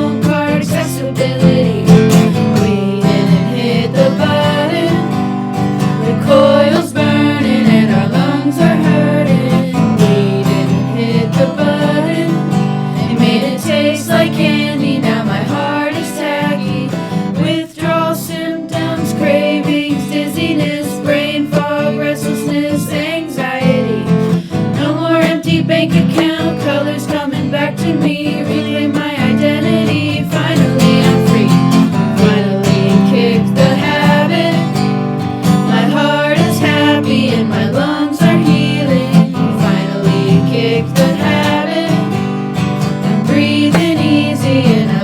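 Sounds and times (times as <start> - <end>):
person singing: 0.0 - 34.9, 35.5 - 42.3, 43.1 - 45.0
strummed acoustic guitar: 0.0 - 45.0.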